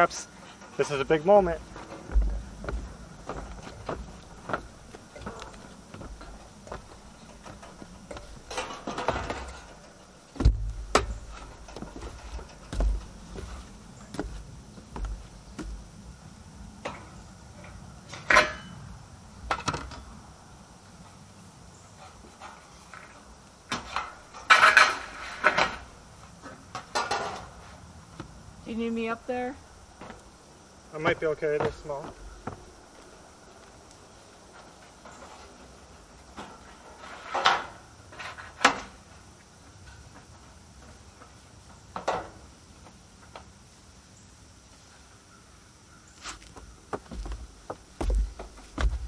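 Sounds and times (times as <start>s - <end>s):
metal roofing panels clanking: 0.6s - 15.9s, 23.7s - 27.7s.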